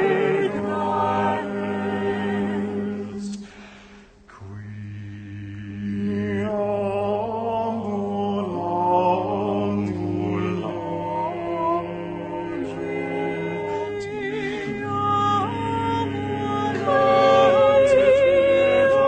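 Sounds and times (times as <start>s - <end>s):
slow sung chant: 0.0s - 19.0s
held low accompanying notes: 10.0s - 19.0s.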